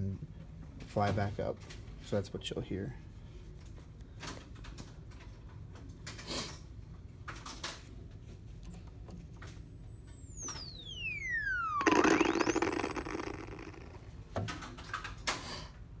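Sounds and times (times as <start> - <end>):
synthesizer falling whistle tone: 10.0 - 14.0
synthesizer explosion noise: 10.4 - 14.0.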